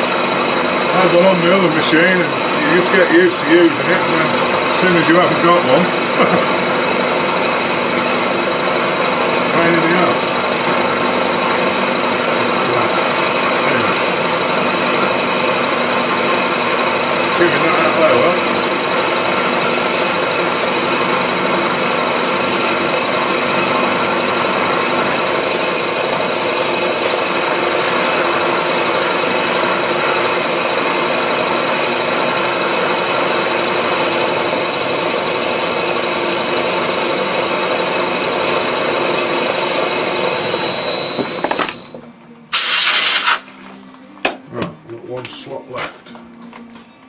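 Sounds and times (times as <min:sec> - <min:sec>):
milling machine running: 0:00.0 - 0:43.5
high whine: 0:00.0 - 0:44.7
loud hiss: 0:42.5 - 0:43.5.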